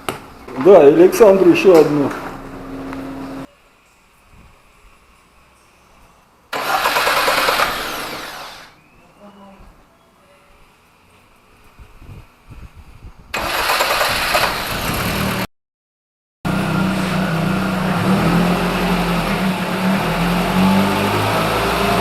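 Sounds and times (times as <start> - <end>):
car engine starting and running: 1.6 - 3.5, 6.5 - 8.7, 13.4 - 15.5, 16.5 - 22.0.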